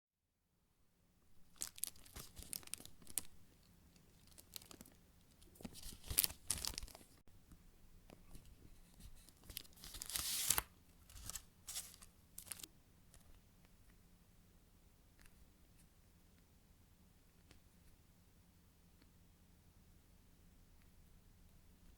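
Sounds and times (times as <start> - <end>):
squishy toy crackly rustling: 1.4 - 3.4, 4.0 - 7.2, 11.1 - 12.7.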